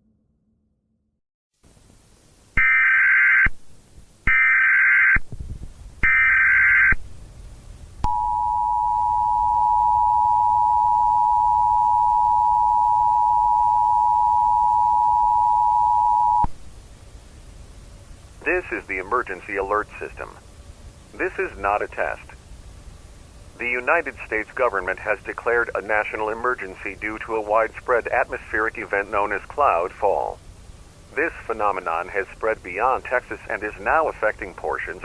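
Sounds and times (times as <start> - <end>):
data burst tones: 8.0 - 16.5
two-tone attention signal: 8.0 - 16.5.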